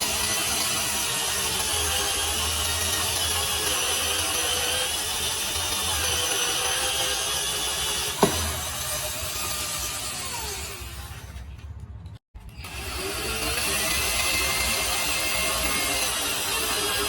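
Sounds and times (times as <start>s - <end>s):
electric drill boring into wood: 0.0s - 11.2s, 12.6s - 17.0s
sharp knock: 8.2s - 9.0s.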